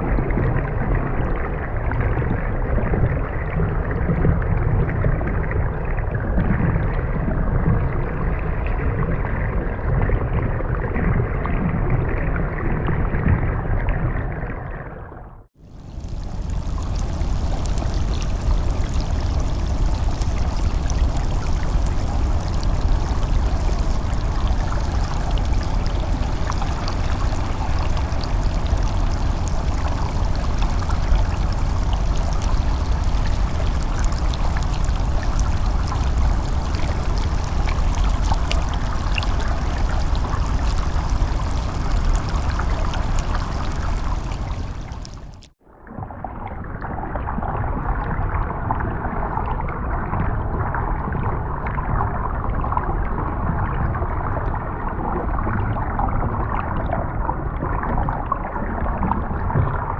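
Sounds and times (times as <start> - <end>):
rushing water: 15.6 - 45.5.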